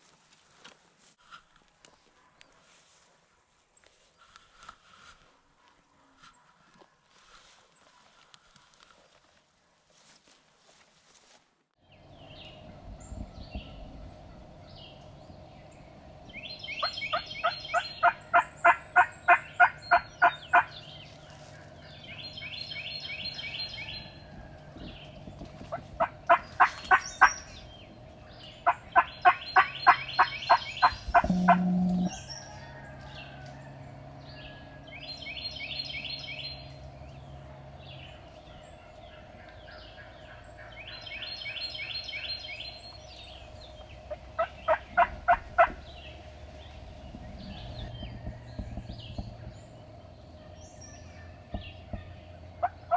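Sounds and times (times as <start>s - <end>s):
faint steady hum: 11.8s - 52.9s
high-pitched birdsong: 11.8s - 52.9s
turkey yelping: 16.4s - 24.5s, 25.7s - 33.5s, 38.5s - 46.5s, 50.3s - 52.9s.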